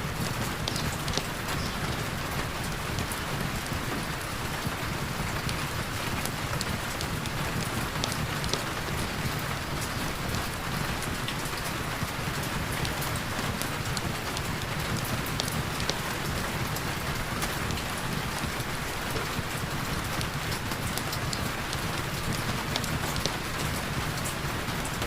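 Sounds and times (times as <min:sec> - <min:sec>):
sharp raindrop ticks: 0:00.1 - 0:25.0.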